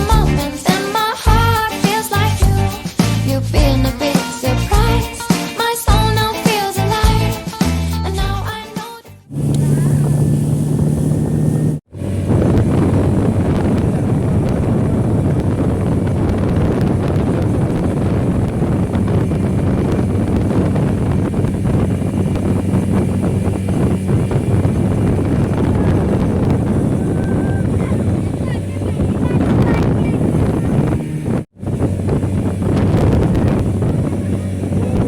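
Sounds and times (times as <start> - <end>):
speedboat engine droning: 9.3 - 35.0
wind buffeting microphone: 9.3 - 35.0.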